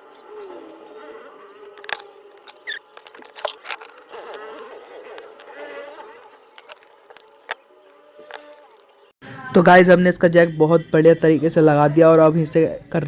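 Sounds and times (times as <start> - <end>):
faint squeaky chirps: 0.0 - 9.2.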